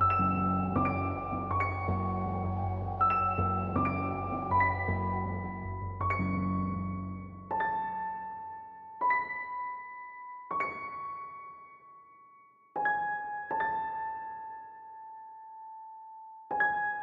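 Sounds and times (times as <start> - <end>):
slow piano notes: 0.0 - 11.9.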